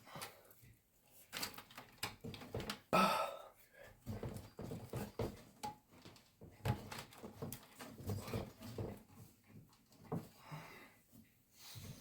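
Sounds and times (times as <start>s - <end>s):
small clicks taps and rustles: 0.2s - 2.9s, 3.9s - 10.4s.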